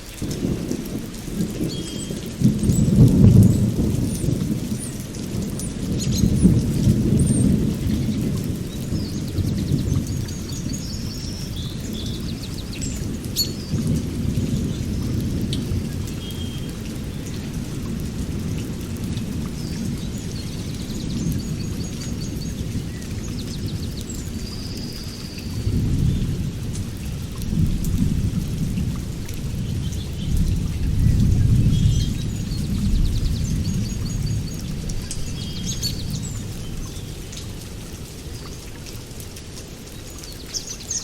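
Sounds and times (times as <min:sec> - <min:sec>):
steady rain: 0:00.0 - 0:41.0
rolling thunder: 0:00.2 - 0:24.5, 0:25.5 - 0:37.5
birds chirping and trilling: 0:05.6 - 0:06.6, 0:07.2 - 0:13.8, 0:31.7 - 0:37.2.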